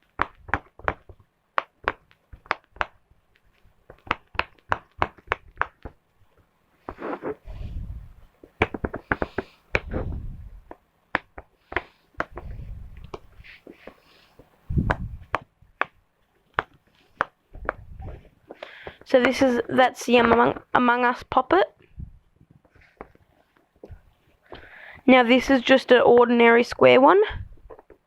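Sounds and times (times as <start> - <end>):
handling thuds and rustling: 11.5 - 20.8.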